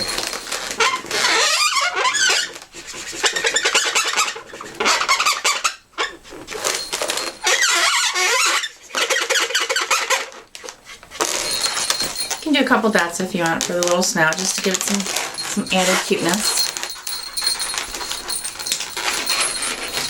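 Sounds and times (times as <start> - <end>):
marker squeaking on balloon: 0.0 - 12.5.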